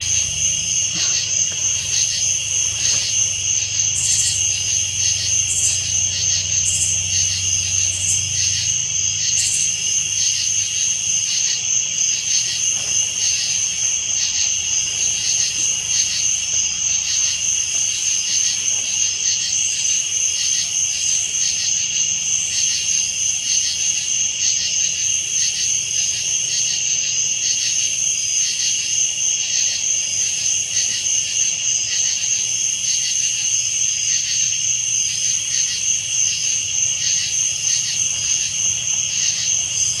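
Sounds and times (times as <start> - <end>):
faint low rumble: 0.0 - 10.3
crickets trilling: 0.0 - 40.0.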